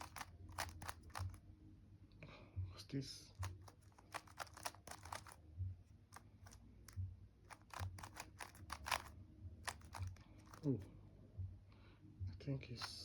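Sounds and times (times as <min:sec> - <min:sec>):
puzzle cube plastic clicks: 0:00.0 - 0:01.4, 0:03.4 - 0:05.4, 0:06.2 - 0:10.7.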